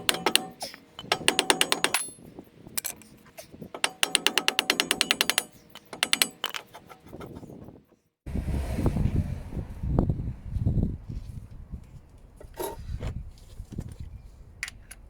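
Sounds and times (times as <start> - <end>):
ratchet wrench clicking: 0.0 - 3.1, 3.8 - 6.8.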